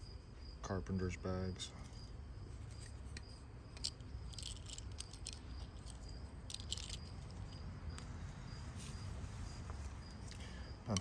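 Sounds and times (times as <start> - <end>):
crickets chirping: 0.0 - 11.0
metal pocket tools clicking: 2.7 - 7.6.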